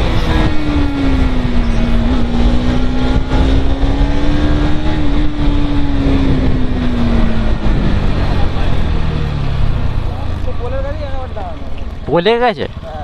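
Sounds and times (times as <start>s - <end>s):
wind rumble on microphone: 0.0s - 10.1s
motorcycle engine running: 0.0s - 13.0s.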